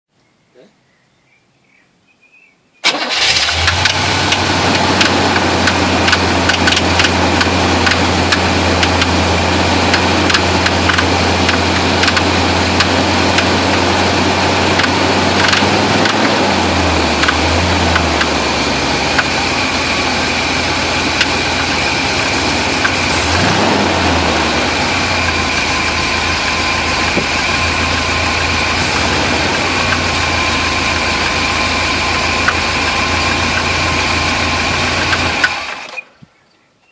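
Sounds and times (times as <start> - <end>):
engine revving: 2.9 - 36.0
engine idling rough with knocking: 3.5 - 35.9.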